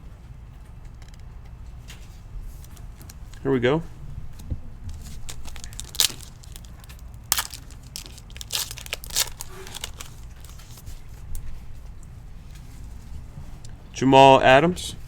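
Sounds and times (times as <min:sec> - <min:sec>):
foil wrapper tearing and crinkling: 0:04.9 - 0:11.0.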